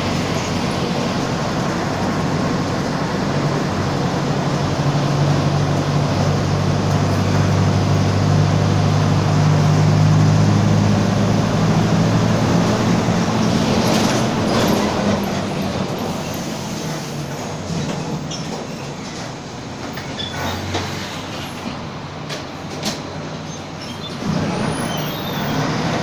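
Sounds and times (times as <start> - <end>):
bus engine drone: 0.0 - 26.0.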